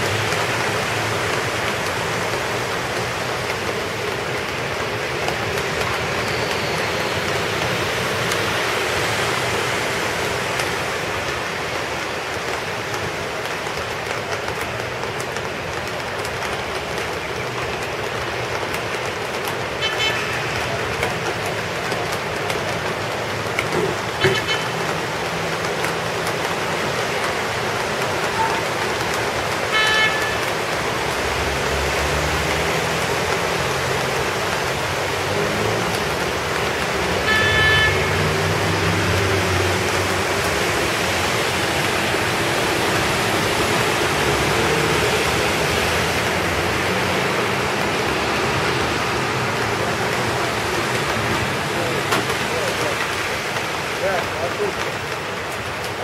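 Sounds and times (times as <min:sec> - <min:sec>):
heavy rain hissing: 0:00.0 - 0:56.0
car traffic passing: 0:15.0 - 0:56.0
car horns tooting: 0:19.8 - 0:20.7, 0:24.2 - 0:25.0, 0:29.7 - 0:30.6, 0:37.2 - 0:38.4.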